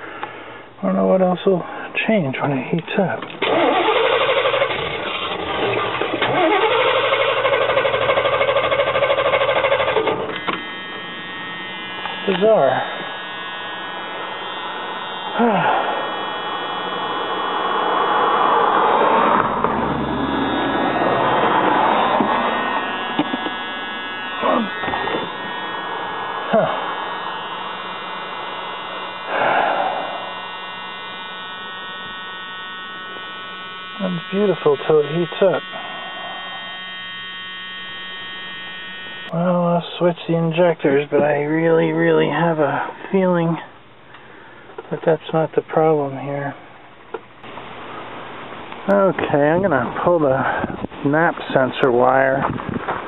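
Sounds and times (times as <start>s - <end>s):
steady buzzing hum: 0.0s - 53.0s
van engine running: 2.4s - 39.3s.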